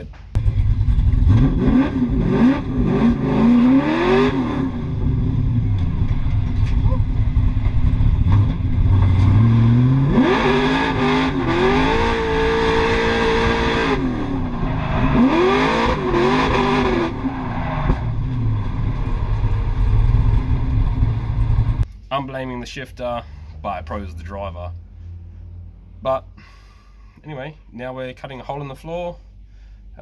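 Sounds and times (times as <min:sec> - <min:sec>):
car engine revving hard: 0:00.5 - 0:06.1, 0:07.4 - 0:21.8.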